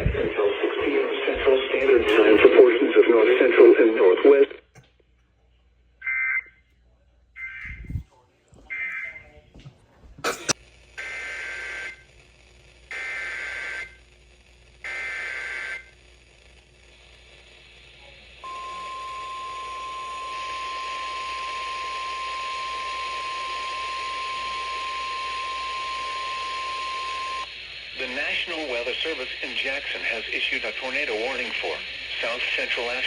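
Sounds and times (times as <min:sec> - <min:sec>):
radio hiss: 0:00.0 - 0:04.8, 0:10.2 - 0:33.0
steady warning alarm tone: 0:18.4 - 0:27.5.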